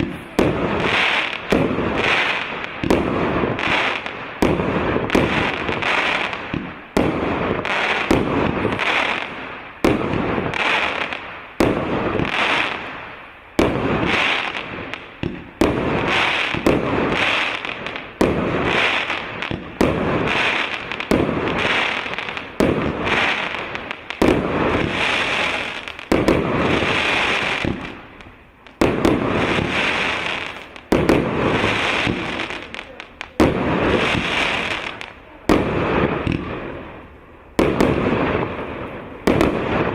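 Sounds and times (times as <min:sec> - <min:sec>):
fireworks bangs and bursts: 0:00.0 - 0:39.9.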